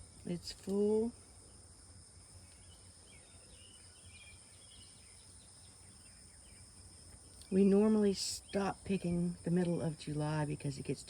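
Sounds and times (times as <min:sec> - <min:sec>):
faint bird chirps: 0:02.3 - 0:07.6.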